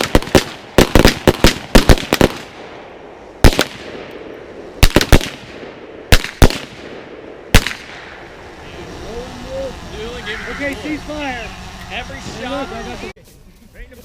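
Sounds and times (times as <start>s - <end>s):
gunshots with echo: 4.8s - 8.2s.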